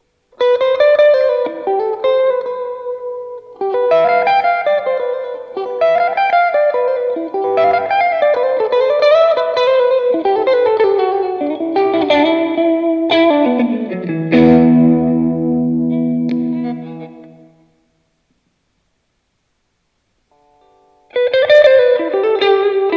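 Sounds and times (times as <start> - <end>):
electric guitar lead line: 0.4 - 17.7, 21.1 - 22.9
low guitar chord ringing: 14.3 - 17.6.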